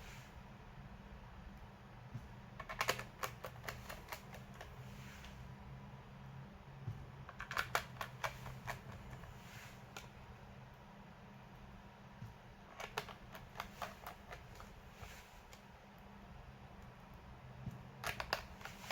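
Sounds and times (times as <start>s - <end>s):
steady low hum: 0.0s - 18.9s
laptop keyboard typing: 2.3s - 4.8s, 7.2s - 9.3s, 12.7s - 14.8s, 17.7s - 18.9s.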